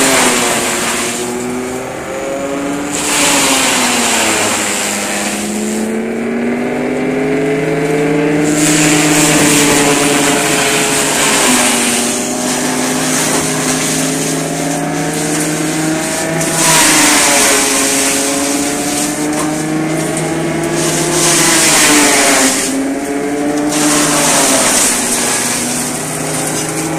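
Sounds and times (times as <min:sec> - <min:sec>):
engine running: 0:00.0 - 0:26.9
rushing noise: 0:07.4 - 0:26.2.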